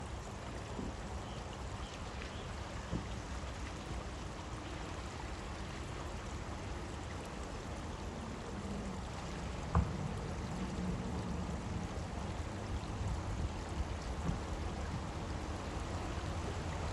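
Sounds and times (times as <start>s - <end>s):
water rushing: 0.0s - 16.9s
thump: 9.7s - 10.0s.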